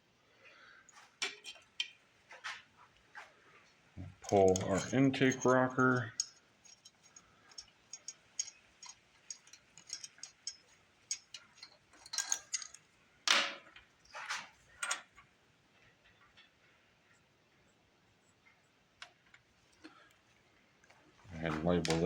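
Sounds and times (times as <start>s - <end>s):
metal scraping: 4.1s - 12.8s
light metallic clicks and clinks: 4.2s - 12.9s.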